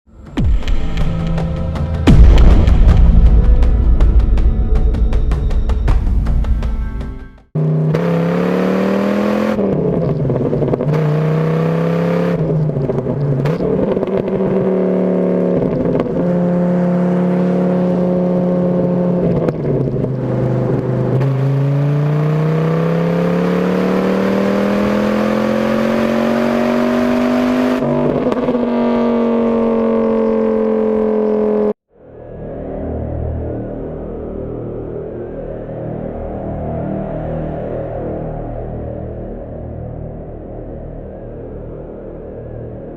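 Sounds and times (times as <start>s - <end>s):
car engine revving hard: 7.6s - 31.8s.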